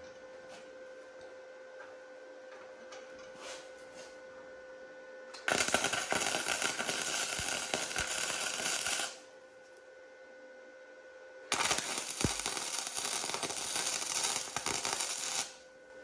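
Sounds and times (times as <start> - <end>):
welder arc crackling: 5.4 - 9.2, 11.5 - 15.6.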